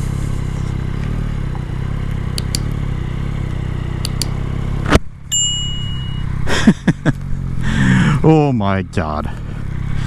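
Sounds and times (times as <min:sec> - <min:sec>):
motorcycle engine running: 0:00.0 - 0:10.0
sharp click: 0:02.3 - 0:02.7, 0:04.0 - 0:05.0
light ticks: 0:03.5 - 0:04.4.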